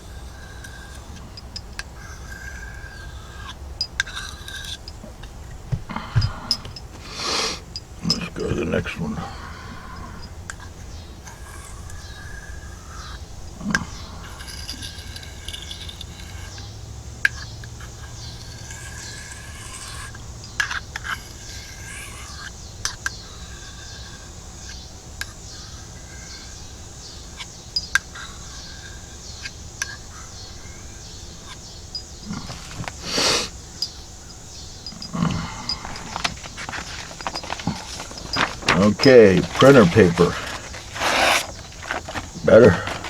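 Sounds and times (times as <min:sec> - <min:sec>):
knife scraping on whetstone: 0:34.9 - 0:43.0.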